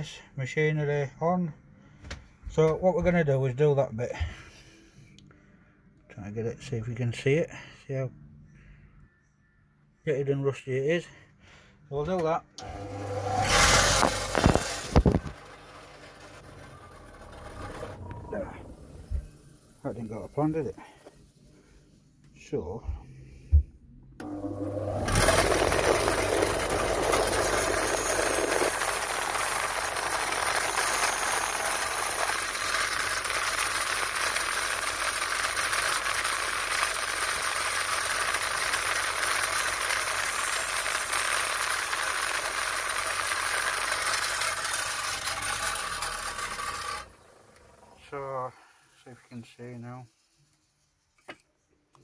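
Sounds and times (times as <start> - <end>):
wire wheel brushing rust: 12.6 - 18.8, 24.9 - 47.2
low motor hum: 12.6 - 20.6, 22.9 - 41.2.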